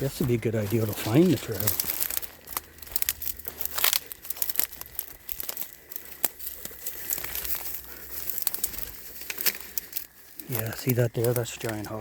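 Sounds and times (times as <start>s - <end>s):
footsteps crunching through dry leaves: 0.0s - 12.0s.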